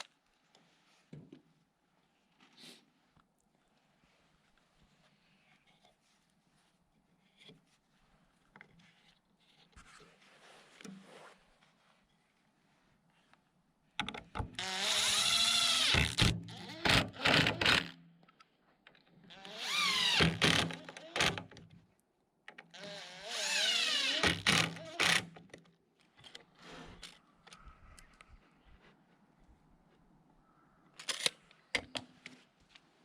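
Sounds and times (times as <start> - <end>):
impact driver driving screws into wood: 14.6 - 18.0, 19.6 - 21.5, 23.6 - 25.4.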